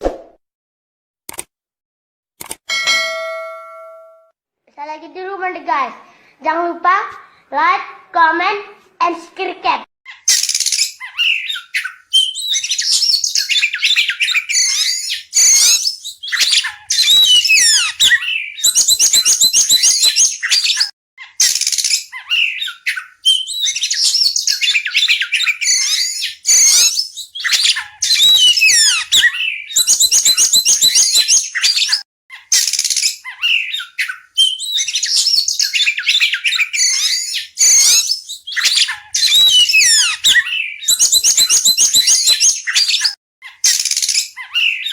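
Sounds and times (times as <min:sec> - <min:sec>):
songbird whistling and trilling: 0:10.3 - 0:44.9.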